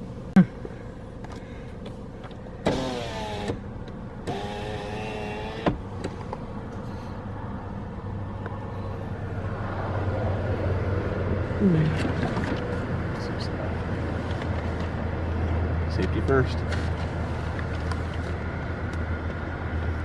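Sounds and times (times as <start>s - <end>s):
car engine rumble: 0.0s - 20.0s
electric window motor whirring: 2.6s - 6.3s.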